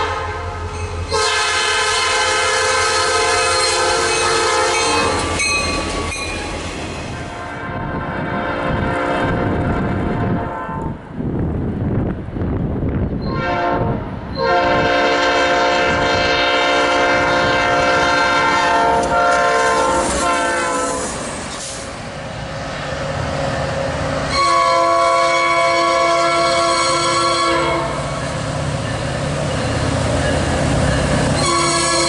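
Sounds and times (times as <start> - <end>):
locomotive horn blasts: 0.0 - 5.5, 7.3 - 11.0, 13.3 - 21.1, 24.3 - 28.2, 31.3 - 32.0
train clattering on rails: 3.2 - 7.2, 17.1 - 25.8, 28.0 - 32.0.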